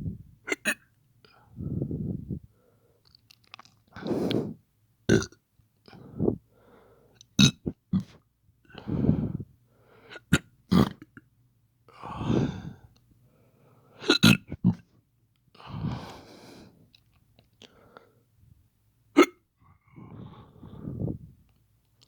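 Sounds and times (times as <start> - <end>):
person burping: 5.1 - 5.3, 7.4 - 8.1.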